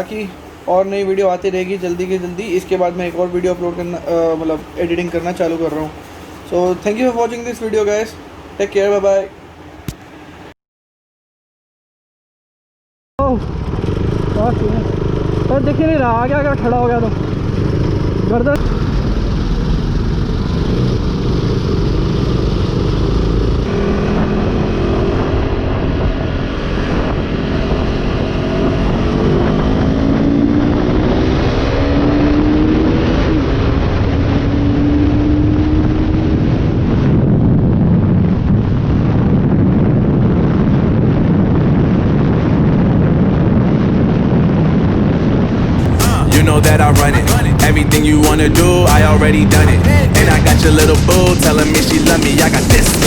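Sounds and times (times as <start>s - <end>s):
wind and road noise: 0.0s - 10.6s, 13.2s - 53.0s
motorcycle engine accelerating: 13.2s - 37.3s, 45.8s - 53.0s.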